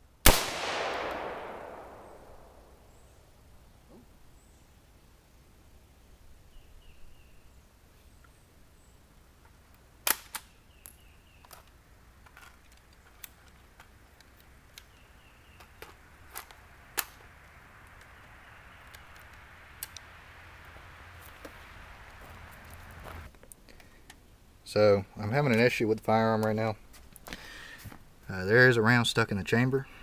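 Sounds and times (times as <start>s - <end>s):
rifle metallic clicks and knocks: 10.1s - 15.0s, 15.6s - 20.1s.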